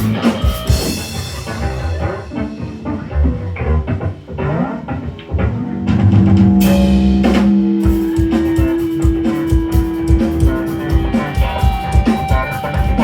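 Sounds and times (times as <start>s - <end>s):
fast driving drum beat: 0.0s - 3.1s, 5.9s - 13.0s
live band playing: 0.0s - 13.0s
cymbal crash: 5.9s - 13.0s.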